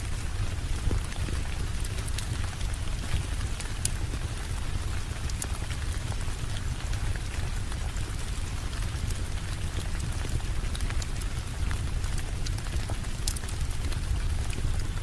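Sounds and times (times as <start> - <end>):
steady rain hiss: 0.0 - 15.0
sharp ticks and pops: 9.7 - 14.9.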